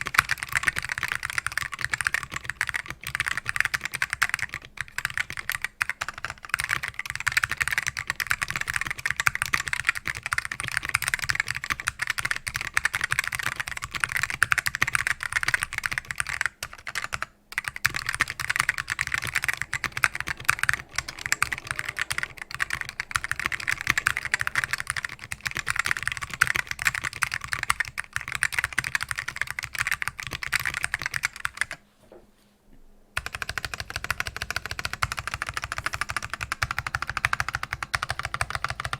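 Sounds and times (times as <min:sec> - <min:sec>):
mechanical keyboard typing: 0:00.0 - 0:31.8, 0:33.2 - 0:38.9.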